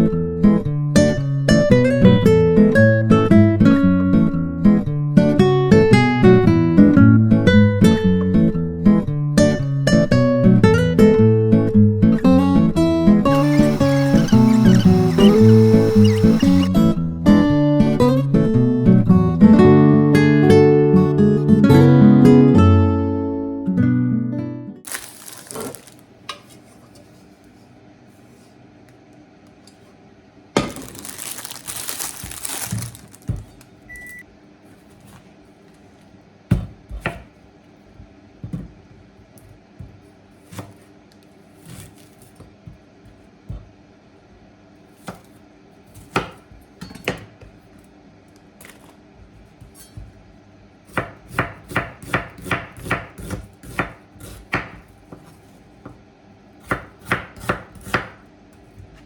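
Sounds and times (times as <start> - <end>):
kitchen knocks and clatter: 30.6 - 31.0
knife chopping on cutting board: 36.5 - 37.4, 39.8 - 40.8, 45.0 - 47.6, 50.9 - 56.0, 56.6 - 58.2.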